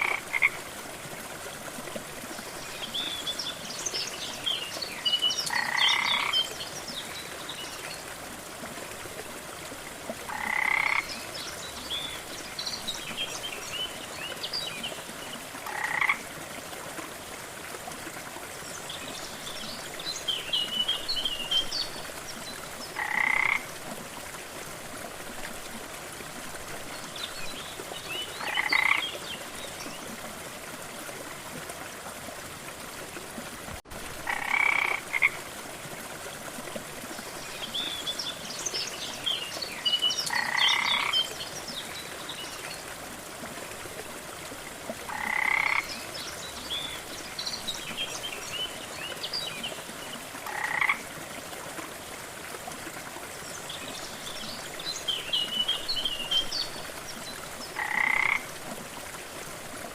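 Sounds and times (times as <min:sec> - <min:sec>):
frogs croaking: 0:00.0 - 0:00.6, 0:05.4 - 0:06.6, 0:10.3 - 0:11.2, 0:15.6 - 0:16.3, 0:22.9 - 0:23.7, 0:28.4 - 0:29.2, 0:34.2 - 0:35.4, 0:40.3 - 0:41.3, 0:45.1 - 0:46.0, 0:50.4 - 0:51.1, 0:57.8 - 0:58.5.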